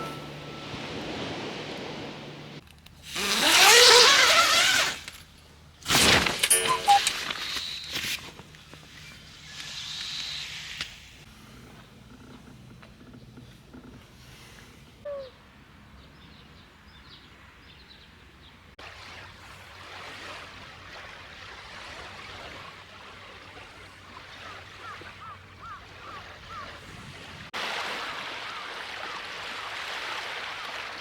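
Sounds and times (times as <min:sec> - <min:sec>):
lake waves: 0:00.0 - 0:05.0, 0:18.8 - 0:31.0
short chirping calls: 0:06.5 - 0:07.1.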